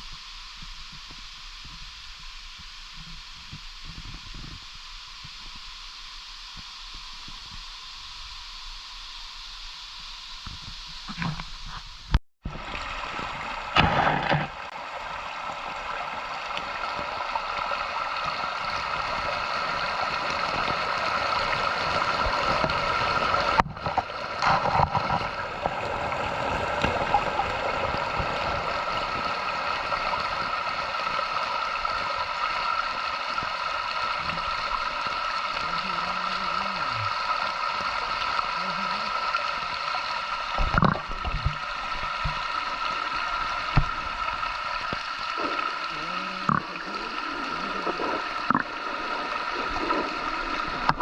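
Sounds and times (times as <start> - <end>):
splash or knock: 13.7 - 14.6
waterfall rushing: 25.4 - 51.0.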